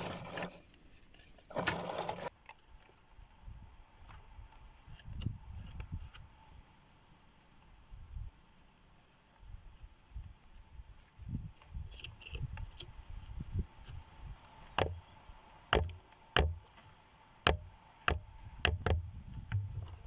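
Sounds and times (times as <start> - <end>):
axe striking wood: 14.8 - 15.0, 15.8 - 16.6, 17.5 - 19.7.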